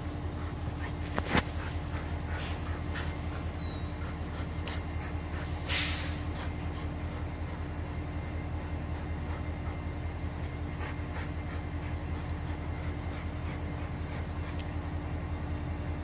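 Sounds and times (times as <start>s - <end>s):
train passing rumble: 0.0s - 16.0s
short hiss: 5.4s - 6.3s
faint clicks: 12.2s - 13.1s.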